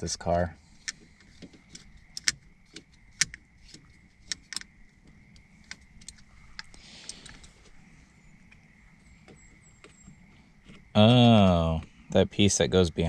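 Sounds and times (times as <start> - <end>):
small parts clicking and tapping: 0.8 - 7.8
faint steady high tone: 5.3 - 13.0.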